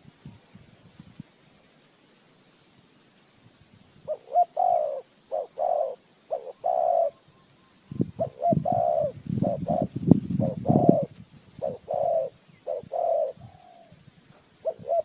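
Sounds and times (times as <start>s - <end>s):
dove cooing: 4.0s - 7.3s, 7.9s - 15.0s.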